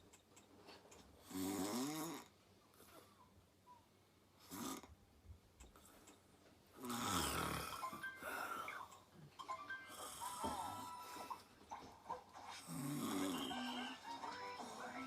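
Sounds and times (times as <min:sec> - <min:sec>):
woman snoring: 0:01.3 - 0:02.3, 0:06.8 - 0:08.8, 0:09.9 - 0:11.2, 0:12.6 - 0:13.9.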